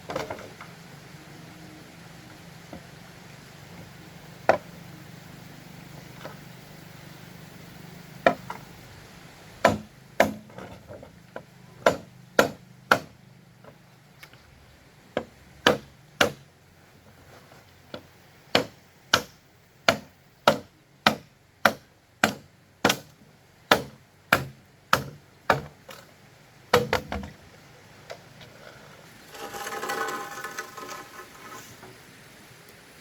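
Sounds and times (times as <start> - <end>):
blade chopping bamboo: 9.6 - 11.0, 11.8 - 13.2, 15.2 - 16.4, 18.5 - 26.0, 26.7 - 27.3.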